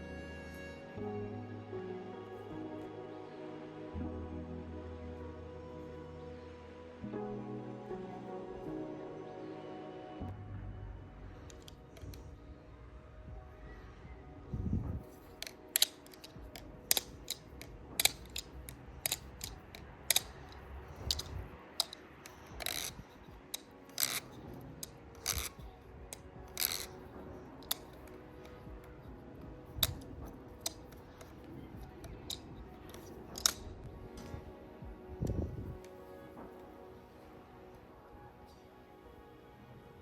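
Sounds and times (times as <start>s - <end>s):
balisong handles clicking: 15.0s - 34.3s.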